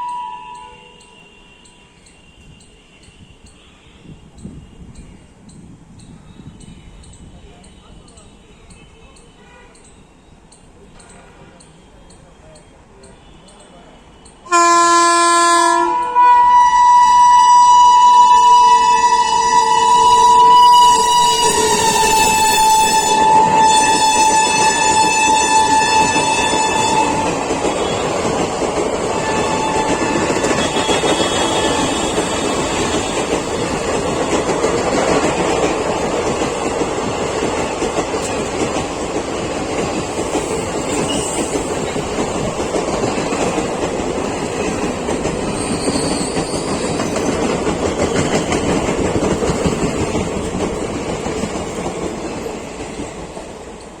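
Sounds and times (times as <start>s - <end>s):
faint train horn: 0.0s - 5.1s, 7.3s - 10.0s, 13.0s - 34.6s
train rushing past: 14.4s - 54.0s
wheels clattering over rail joints: 24.0s - 54.0s.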